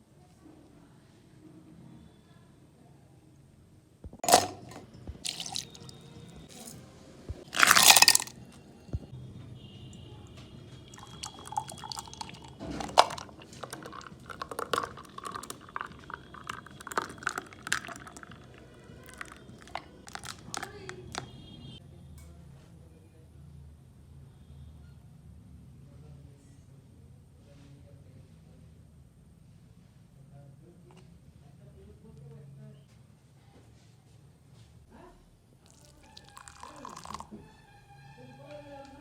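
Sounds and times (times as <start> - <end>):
coffee utensils knocking and clinking: 4.2 - 5.7, 7.5 - 8.3, 11.0 - 18.4.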